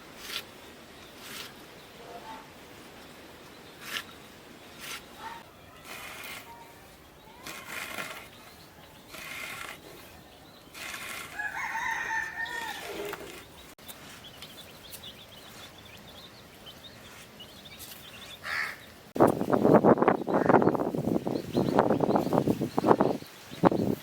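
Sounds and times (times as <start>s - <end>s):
rooster crowing: 11.3s - 13.3s.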